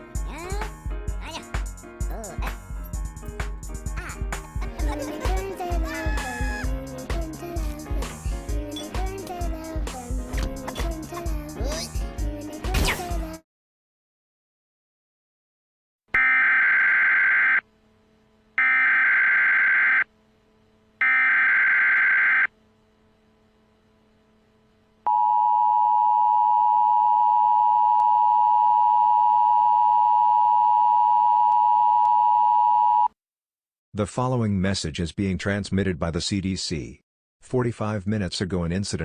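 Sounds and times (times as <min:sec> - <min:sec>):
buzzy data bursts: 0:05.0 - 0:10.3, 0:16.2 - 0:22.9.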